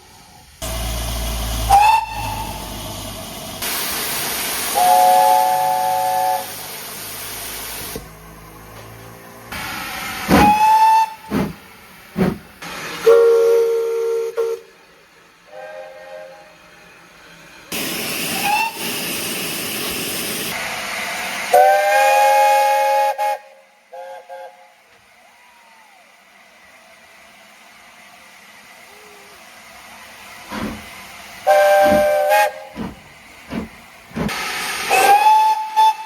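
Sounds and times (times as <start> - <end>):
steam hissing: 0.0 - 8.7, 9.3 - 36.0
steam locomotive whistle: 0.6 - 2.9, 4.6 - 6.8, 10.3 - 11.5, 12.9 - 14.8, 15.5 - 16.7, 17.8 - 20.6, 21.5 - 26.2, 31.4 - 33.0, 34.4 - 36.0.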